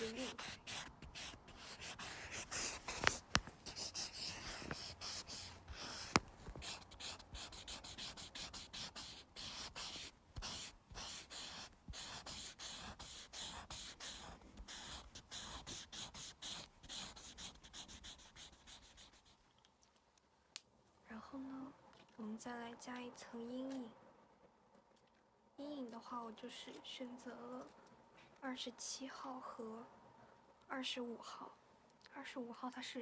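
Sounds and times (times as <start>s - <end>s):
felt-tip marker scratching: 0.0s - 19.4s.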